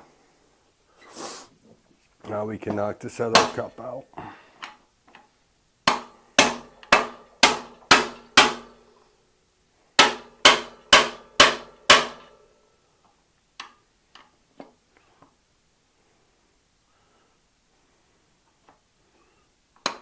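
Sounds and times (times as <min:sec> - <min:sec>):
hammer striking metal tool: 0:03.3 - 0:03.8, 0:05.9 - 0:08.8, 0:10.0 - 0:12.3.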